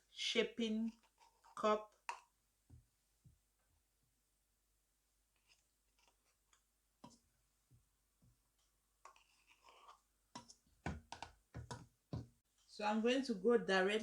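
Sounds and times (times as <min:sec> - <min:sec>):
utensils clicking and scraping pot: 0:09.0 - 0:11.8.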